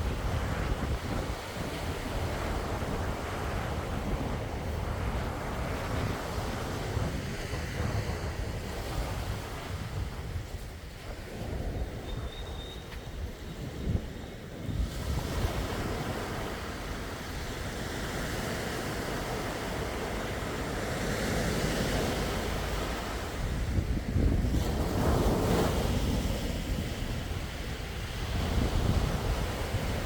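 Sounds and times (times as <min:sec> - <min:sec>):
wind buffeting microphone: 0:00.0 - 0:30.0
sea waves washing onto shore: 0:14.6 - 0:30.0.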